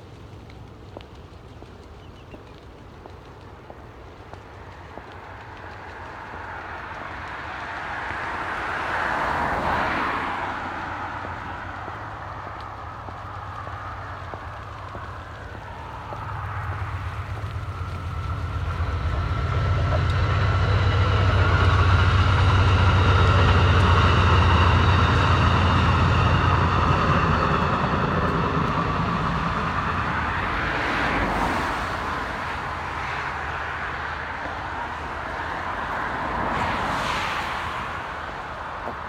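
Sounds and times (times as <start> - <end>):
large vehicle engine hum: 6.2 - 39.0
steady high whine: 12.9 - 32.8.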